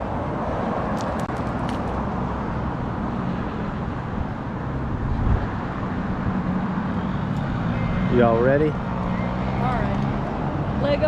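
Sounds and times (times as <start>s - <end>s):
low rumbling outdoor noise: 0.0s - 11.0s.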